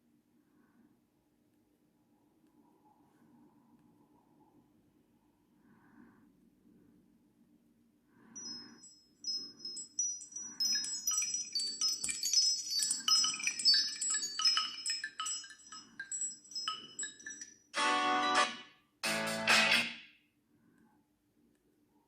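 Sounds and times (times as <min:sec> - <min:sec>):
tinkling chime ringtone: 0:08.3 - 0:18.7.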